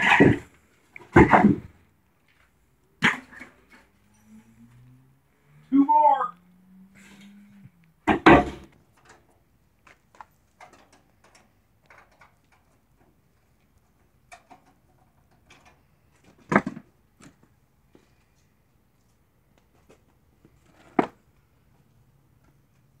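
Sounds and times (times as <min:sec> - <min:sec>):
loud thumps: 0:01.1 - 0:01.8, 0:08.0 - 0:08.8
knocks and clatters: 0:08.0 - 0:17.5.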